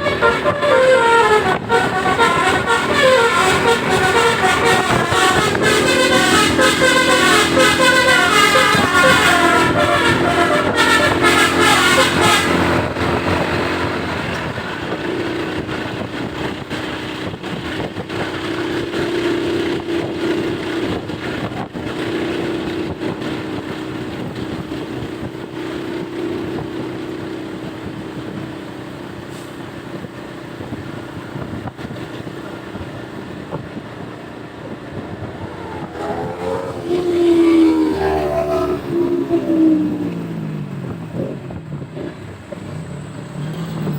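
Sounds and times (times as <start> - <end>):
multi-tone bus horn melody: 0.0 - 25.4, 34.6 - 40.5
buses driving past: 0.0 - 43.9.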